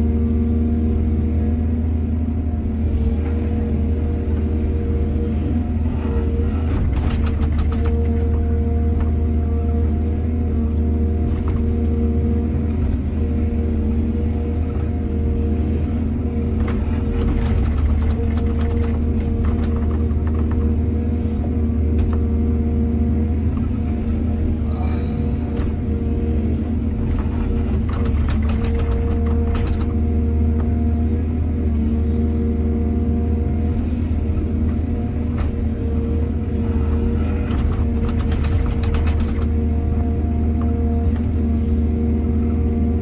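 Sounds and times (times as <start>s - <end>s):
diesel excavator engine droning: 0.0s - 43.0s
clanking and rattling: 6.7s - 8.4s, 16.6s - 20.7s, 27.0s - 30.0s, 37.2s - 39.6s.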